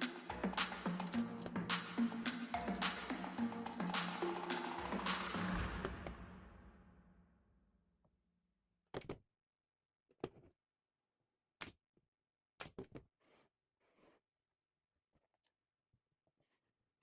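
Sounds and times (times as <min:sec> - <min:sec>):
background music: 0:00.0 - 0:07.0.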